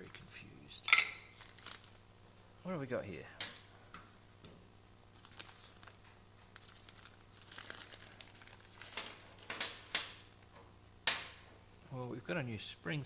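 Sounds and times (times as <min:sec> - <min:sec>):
rustling: 0:05.2 - 0:09.4.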